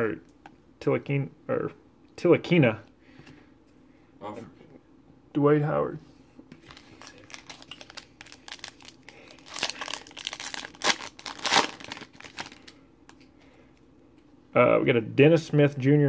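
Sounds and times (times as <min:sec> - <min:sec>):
foil wrapper crinkling: 0:06.6 - 0:12.8.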